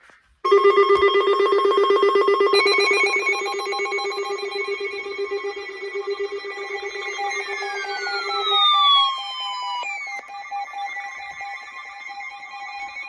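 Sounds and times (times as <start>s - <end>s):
higher electronic tones: 0.5s - 10.2s
pulsing electronic alert tone: 0.5s - 10.2s.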